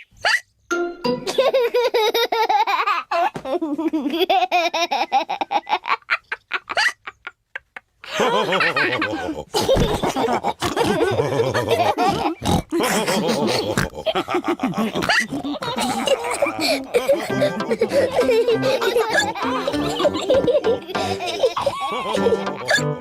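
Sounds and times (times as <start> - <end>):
cartoon pigs laughing and snorting: 1.2 - 23.0.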